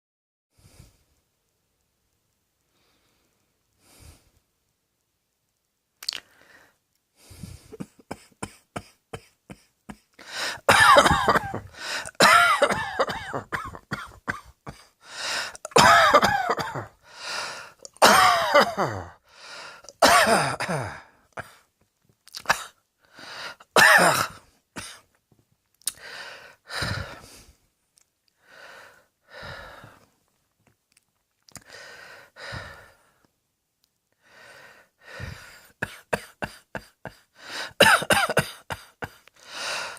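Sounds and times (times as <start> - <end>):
person coughing: 7.7 - 14.9, 15.6 - 16.9, 17.9 - 19.2, 19.9 - 21.6, 23.8 - 25.0, 35.2 - 39.2.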